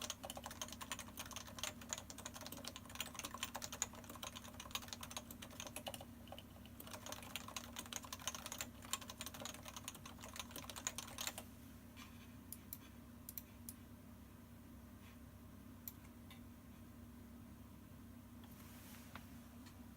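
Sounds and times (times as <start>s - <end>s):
keyboard typing: 0.0s - 11.4s.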